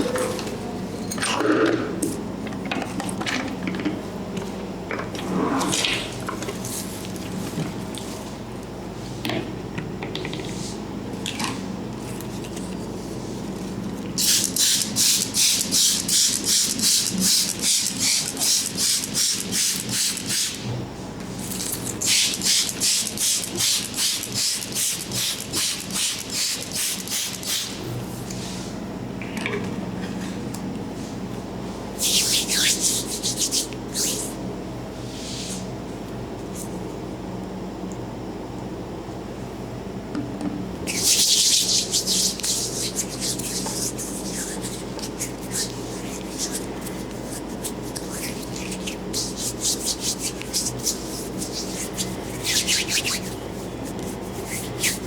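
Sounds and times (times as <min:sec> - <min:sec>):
steady low hum: 0:27.4 - 0:55.0
head massage rubbing strokes: 0:41.0 - 0:55.0.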